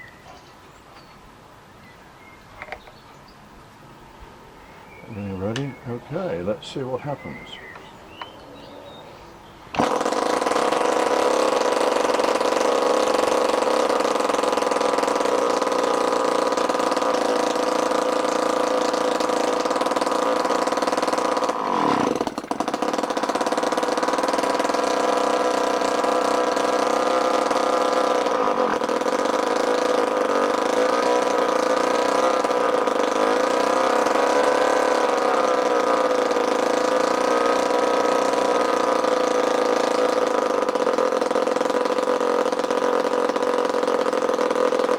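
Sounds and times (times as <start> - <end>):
small petrol engine running: 9.7 - 44.9.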